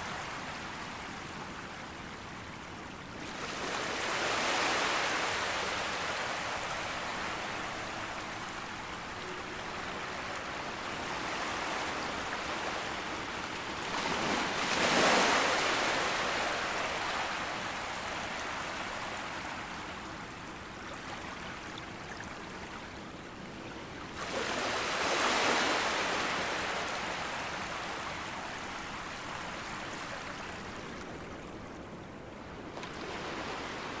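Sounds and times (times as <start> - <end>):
surf washing on beach: 3.2 - 20.5, 24.2 - 31.6.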